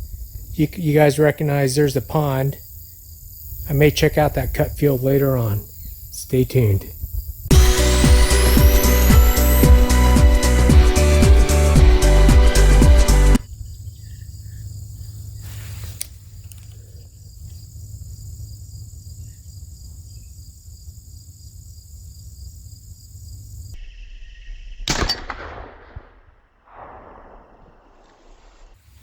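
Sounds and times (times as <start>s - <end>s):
rifle shot: 24.8s - 28.9s.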